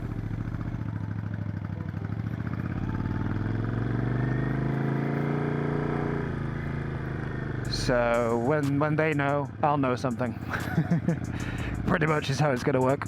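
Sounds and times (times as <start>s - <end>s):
motorcycle engine accelerating: 0.0s - 12.6s.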